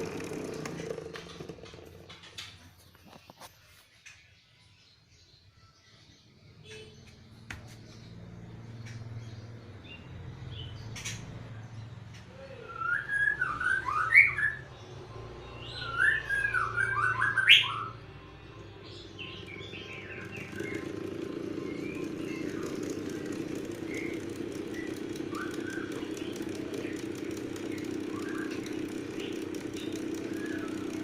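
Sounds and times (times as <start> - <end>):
electric fan humming: 0.0 - 3.0, 13.1 - 31.0.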